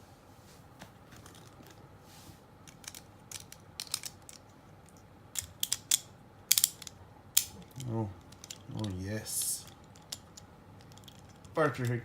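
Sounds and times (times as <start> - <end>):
plastic and metal parts clicking: 2.7 - 4.4, 9.6 - 12.0.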